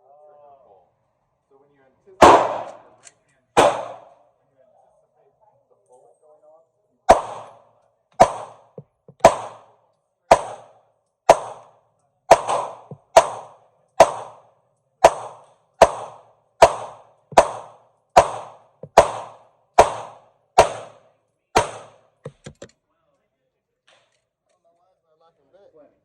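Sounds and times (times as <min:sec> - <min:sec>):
pistol shots: 0:02.2 - 0:03.0, 0:03.6 - 0:04.2, 0:07.1 - 0:07.6, 0:08.2 - 0:22.2.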